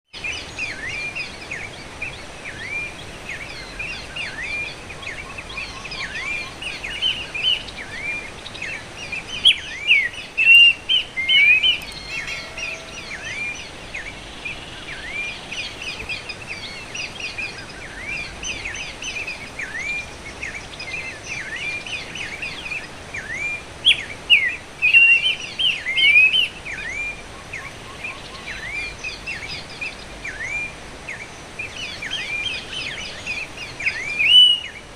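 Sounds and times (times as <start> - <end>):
babbler bird calling: 2.5 - 34.8.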